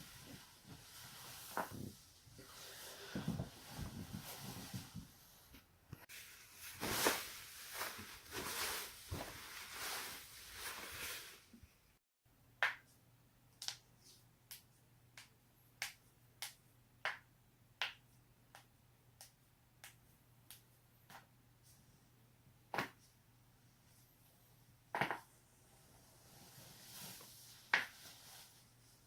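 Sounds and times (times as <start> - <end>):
rustling and crackling: 0.0 - 11.6.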